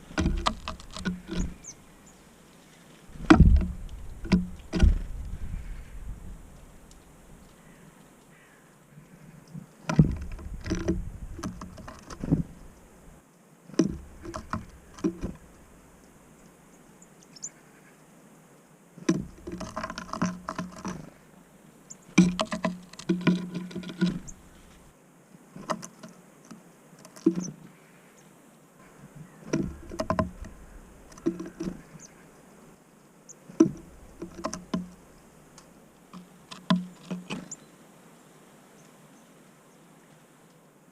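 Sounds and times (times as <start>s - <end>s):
birds knocking and tapping on feeder: 0.0s - 1.7s, 3.1s - 5.9s, 9.9s - 12.7s, 13.7s - 15.6s, 19.0s - 21.1s, 22.1s - 24.9s, 25.6s - 26.1s, 27.0s - 27.6s, 29.3s - 32.0s, 33.5s - 37.6s.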